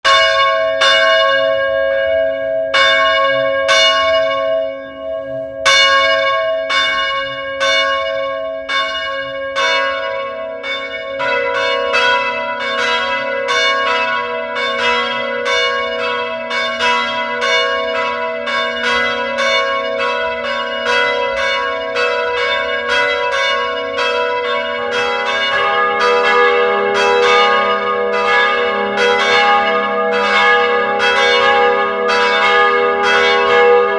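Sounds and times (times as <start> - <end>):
church bells ringing: 0.0 - 33.9
low bell ringing: 0.1 - 33.9.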